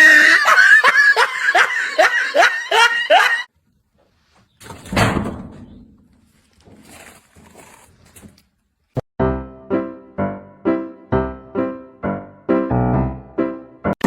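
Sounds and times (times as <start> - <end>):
person laughing: 0.0 - 3.5.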